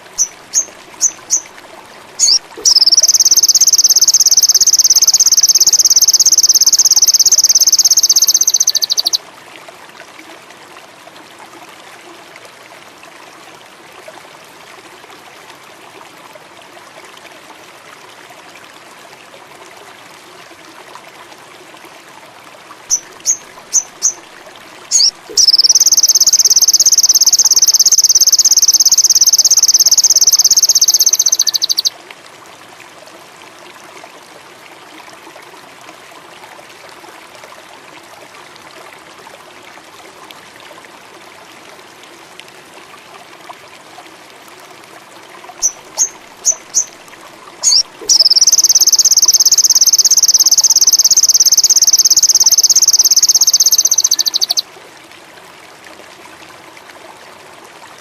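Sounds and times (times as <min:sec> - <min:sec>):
songbird chirping: 0:00.1 - 0:01.5, 0:02.2 - 0:09.2, 0:24.9 - 0:31.9, 0:47.6 - 0:54.6
fast buzzing bird trill: 0:02.2 - 0:09.2, 0:24.9 - 0:31.9, 0:47.6 - 0:54.6.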